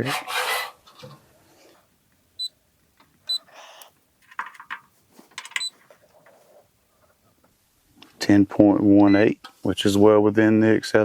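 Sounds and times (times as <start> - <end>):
clicks and rustle of test leads: 3.0 - 6.4.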